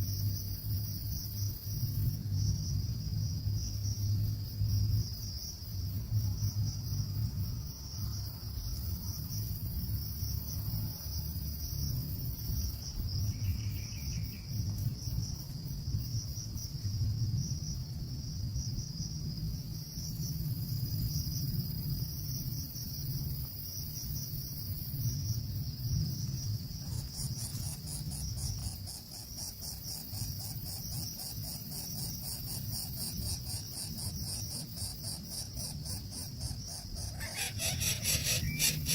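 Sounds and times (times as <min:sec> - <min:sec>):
higher insect pulsing: 0:26.6 - 0:38.9
high-pitched insect drone: 0:26.7 - 0:38.9.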